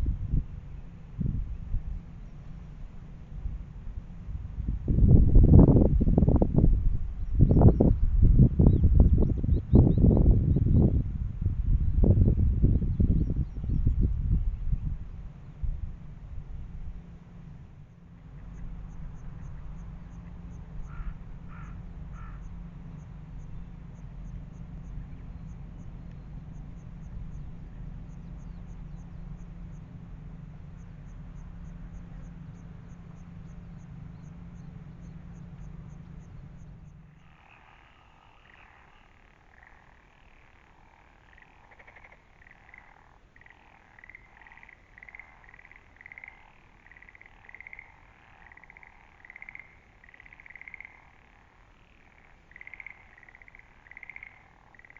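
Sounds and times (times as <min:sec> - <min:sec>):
low rumble: 0:00.0 - 0:50.0
frogs croaking in chorus: 0:17.8 - 0:54.9.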